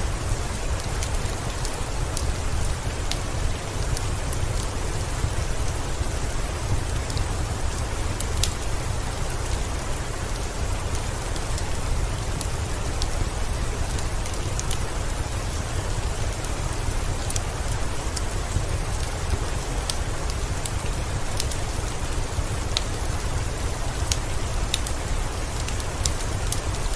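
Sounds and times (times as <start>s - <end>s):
heavy rain: 0.0s - 26.9s.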